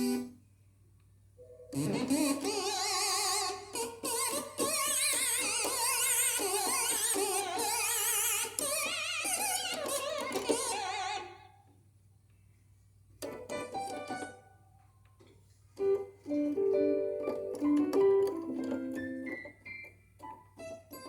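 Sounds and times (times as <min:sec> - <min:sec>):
keyboard playing vibrato chords: 0:01.4 - 0:07.7, 0:15.8 - 0:19.5.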